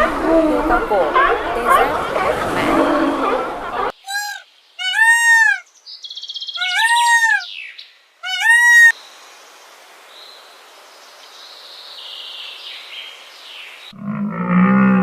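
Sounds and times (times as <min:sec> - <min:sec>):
high-pitched animal calls: 0:04.0 - 0:05.7, 0:06.6 - 0:07.5, 0:08.2 - 0:09.0
faint hiss: 0:08.9 - 0:13.9.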